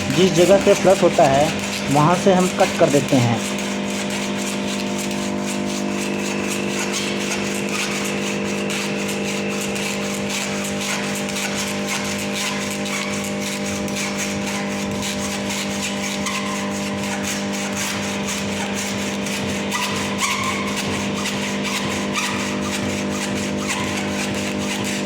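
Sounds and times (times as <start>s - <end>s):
machine droning hum: 0.0s - 10.2s.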